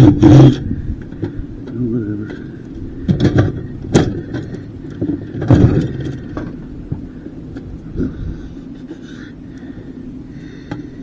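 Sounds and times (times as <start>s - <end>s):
metal parts knocking and clanking: 3.1s - 6.6s.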